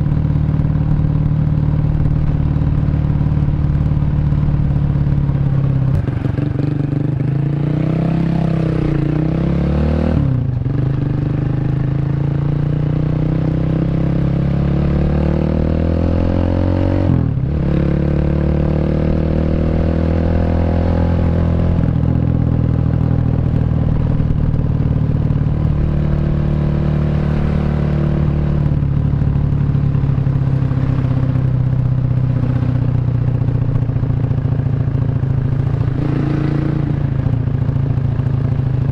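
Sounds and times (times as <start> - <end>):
motorcycle engine accelerating: 0.0 - 38.9.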